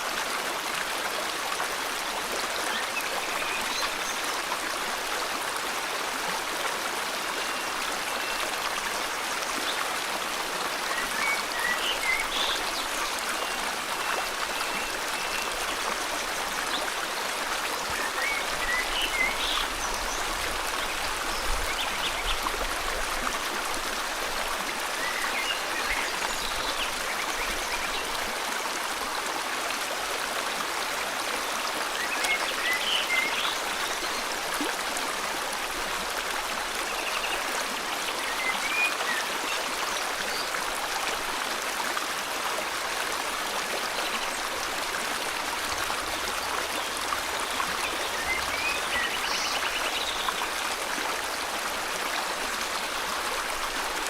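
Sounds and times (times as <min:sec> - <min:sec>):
river water flowing: 0:00.0 - 0:54.0.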